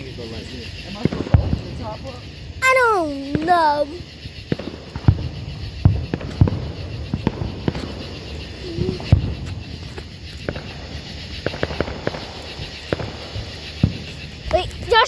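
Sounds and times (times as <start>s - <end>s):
firework pops and crackles: 5.0s - 14.8s.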